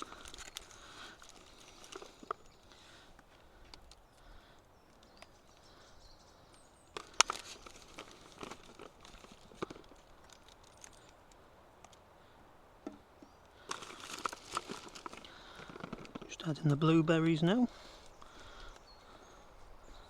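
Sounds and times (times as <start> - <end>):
clicks and knocks of containers: 13.7 - 16.8.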